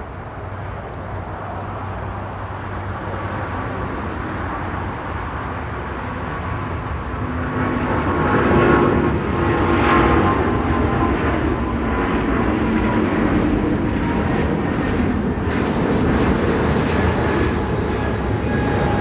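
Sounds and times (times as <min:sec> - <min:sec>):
jet engine rumble: 0:00.0 - 0:19.0.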